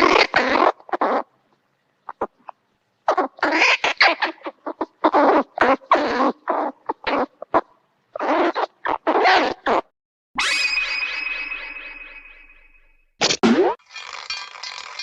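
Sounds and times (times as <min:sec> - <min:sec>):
cartoon animal yelps and chatters: 0:02.1 - 0:10.6.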